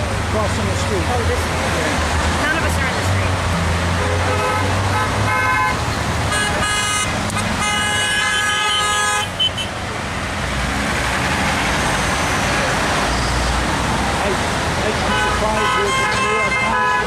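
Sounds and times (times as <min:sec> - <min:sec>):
passing traffic: 0:00.0 - 0:17.0
vehicle horn honking: 0:04.0 - 0:09.8, 0:15.0 - 0:17.0.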